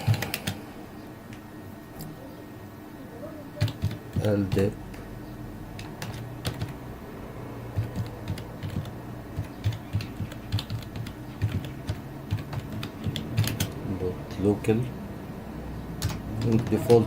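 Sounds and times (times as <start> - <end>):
computer keyboard typing: 0.0 - 0.7, 3.6 - 5.1, 5.7 - 6.9, 7.6 - 13.9, 16.0 - 17.0
low steady hum: 0.0 - 17.0.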